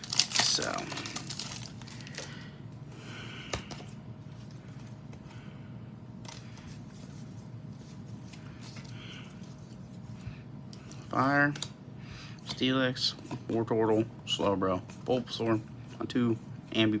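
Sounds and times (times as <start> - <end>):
cards rustling: 0.0 - 2.5, 6.3 - 10.2.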